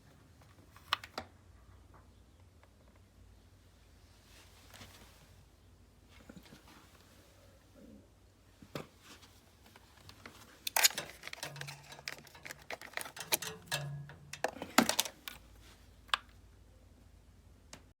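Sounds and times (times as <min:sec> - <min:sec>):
plastic parts clicking: 0:10.6 - 0:15.4.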